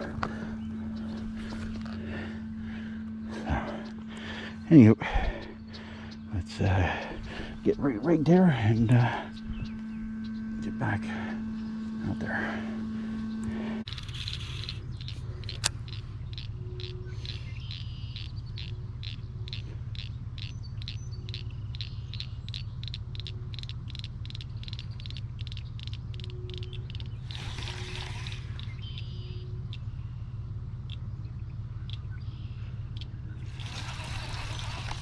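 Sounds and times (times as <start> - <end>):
low rumble: 0.0 - 35.0
high repeated chirp: 14.1 - 29.9.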